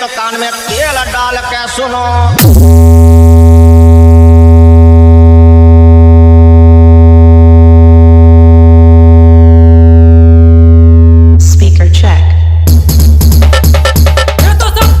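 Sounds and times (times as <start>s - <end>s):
deep synthesized bass tone: 1.8s - 14.2s.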